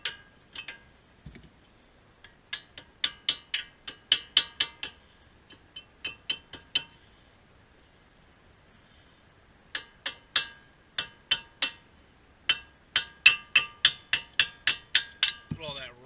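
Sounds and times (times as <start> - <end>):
metal brake pads clicking: 2.2 - 7.0.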